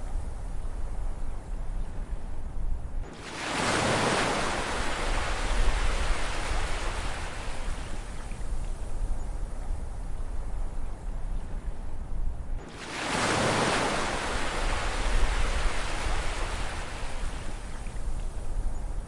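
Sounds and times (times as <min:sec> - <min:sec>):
low rumble of surf: 0:00.0 - 0:19.0
ocean wave breaking: 0:03.1 - 0:08.1, 0:12.6 - 0:17.7.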